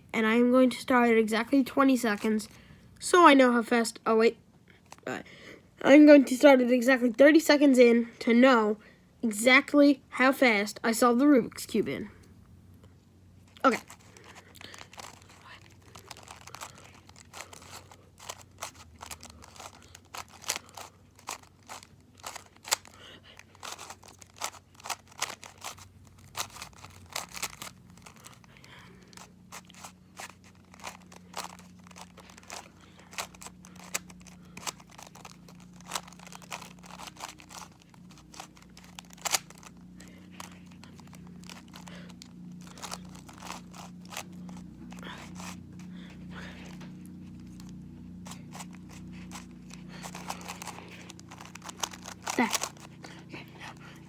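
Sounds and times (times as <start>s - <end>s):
faint low hum: 0.0s - 54.0s
puzzle cube plastic clicks: 13.6s - 45.6s, 46.6s - 54.0s.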